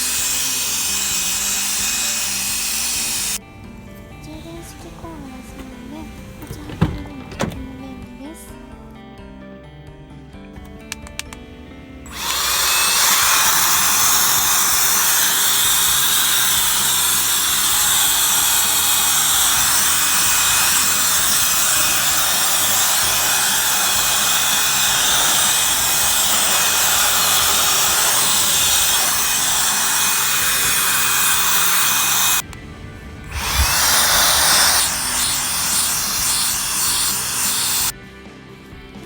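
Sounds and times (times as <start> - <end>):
mini blower running: 0.0 - 3.4, 12.1 - 32.5, 33.2 - 37.9.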